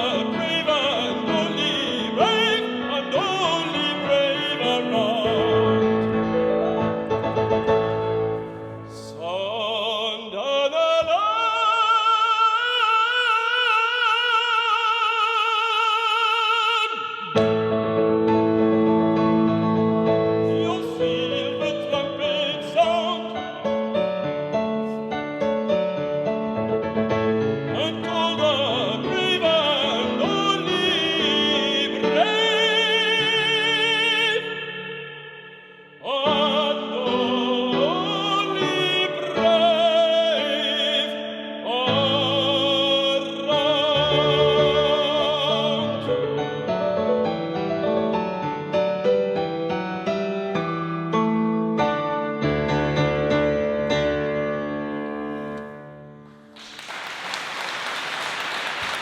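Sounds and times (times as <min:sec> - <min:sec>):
tenor singing with vibrato: 0:00.0 - 0:05.9, 0:20.0 - 0:23.9, 0:27.7 - 0:46.2
piano accompaniment: 0:00.0 - 0:14.1, 0:16.0 - 0:59.0.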